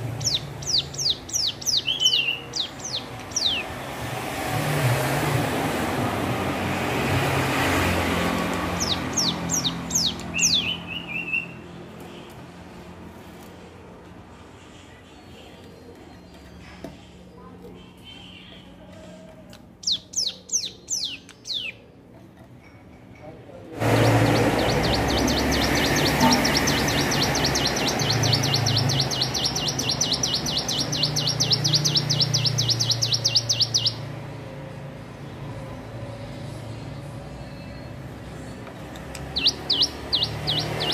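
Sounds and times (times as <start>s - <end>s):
buzzy bird trill: 0.0s - 3.8s, 8.6s - 11.6s, 23.8s - 34.1s, 39.2s - 40.9s
bird singing high whistles: 0.2s - 3.6s, 24.0s - 34.0s, 39.4s - 40.9s.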